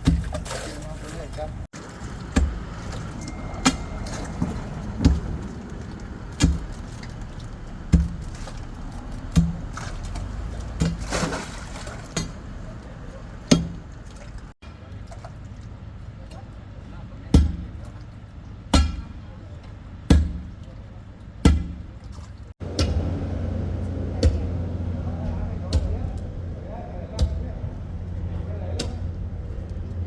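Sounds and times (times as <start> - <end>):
steady low rumble: 22.6 - 30.0.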